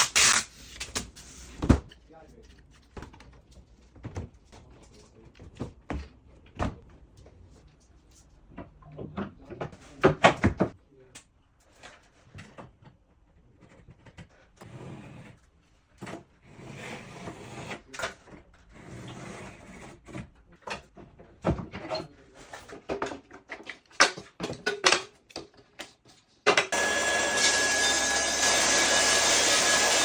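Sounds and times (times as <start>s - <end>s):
power tool whining: 26.7s - 30.0s.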